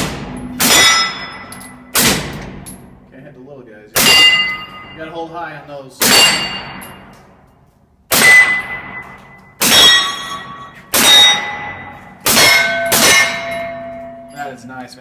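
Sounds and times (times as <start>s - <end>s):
steel target plate ringing: 0.0s - 3.1s, 4.0s - 5.4s, 6.0s - 7.2s, 8.2s - 14.6s
suppressed pistol shots: 1.9s - 2.7s.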